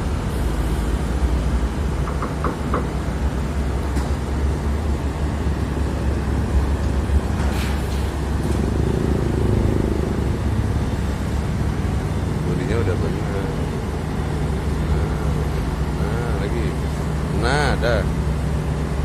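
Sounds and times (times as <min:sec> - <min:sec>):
diesel engine running: 0:00.0 - 0:19.0
brief hiss: 0:07.4 - 0:08.2.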